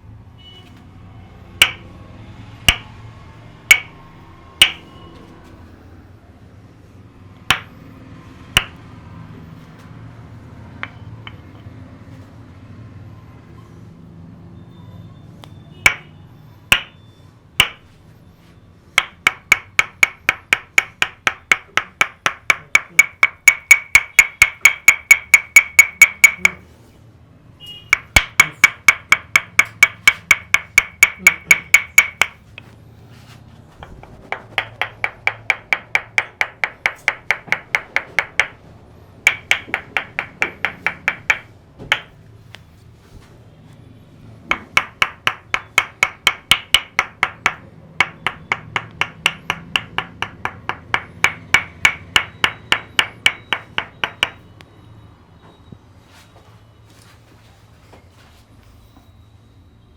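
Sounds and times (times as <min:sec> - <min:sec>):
hollow ringing head tapping: 0:01.5 - 0:02.0, 0:02.6 - 0:03.0, 0:03.6 - 0:05.0, 0:07.4 - 0:08.9, 0:10.8 - 0:11.7, 0:15.4 - 0:18.0, 0:18.9 - 0:26.6, 0:27.9 - 0:32.8, 0:33.8 - 0:42.3, 0:44.4 - 0:54.7.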